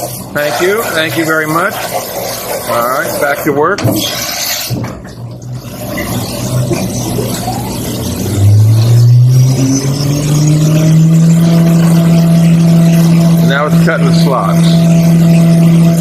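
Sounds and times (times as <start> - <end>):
milling machine humming: 4.1 - 16.0.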